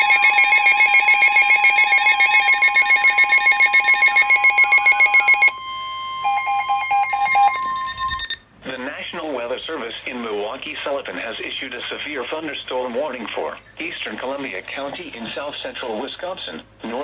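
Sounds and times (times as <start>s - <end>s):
pulsing buzzy alarm tone: 0.0s - 8.4s
steady high alert tone: 0.0s - 8.4s.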